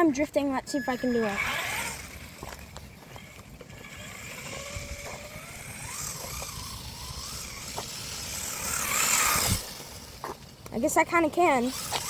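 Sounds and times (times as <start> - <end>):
electric motor whining: 1.0 - 10.4, 11.6 - 12.0
low rumble of tyre noise: 1.5 - 11.0.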